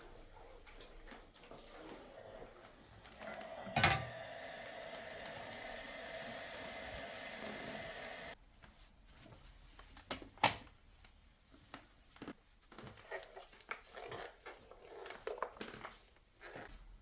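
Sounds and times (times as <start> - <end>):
small electric motor whirring: 3.2 - 8.4.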